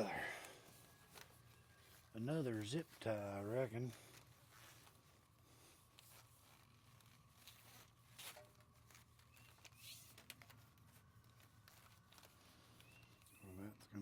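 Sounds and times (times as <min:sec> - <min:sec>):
faint low hum: 0:00.0 - 0:14.0
handling clicks and rustles: 0:00.0 - 0:14.0.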